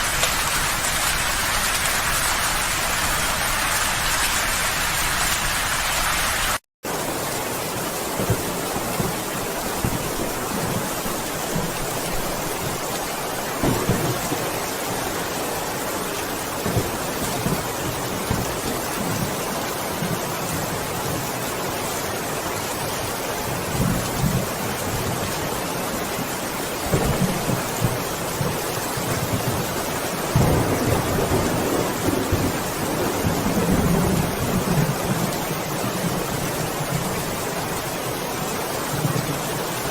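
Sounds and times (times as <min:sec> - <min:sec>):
steady rain: 0:00.0 - 0:39.9
low rumbles of thunder: 0:29.2 - 0:37.0.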